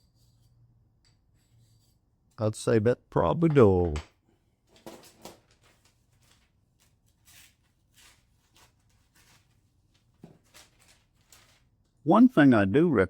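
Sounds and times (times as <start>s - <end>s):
faint rustles and taps of objects: 8.4s - 12.0s.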